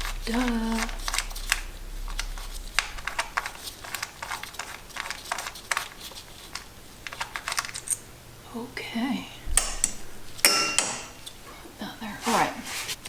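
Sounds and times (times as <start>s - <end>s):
hand tools clicking and tapping: 2.8s - 8.1s, 9.6s - 11.4s.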